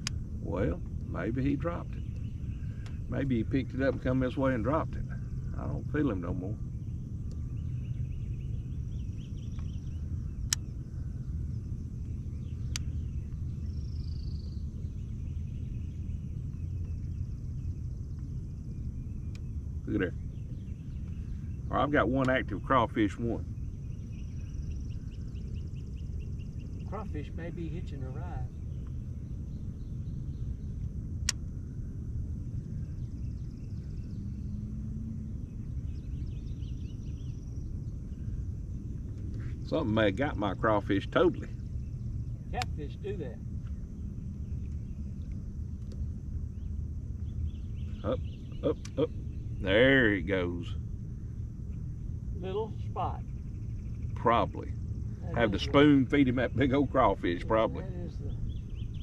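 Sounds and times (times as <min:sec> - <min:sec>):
faint bird chirps: 0:00.0 - 0:59.0
steady low rumble: 0:00.0 - 0:59.0
sharp clicks: 0:10.4 - 0:10.7, 0:12.7 - 0:12.9, 0:31.2 - 0:31.5
sharp click: 0:31.2 - 0:31.4.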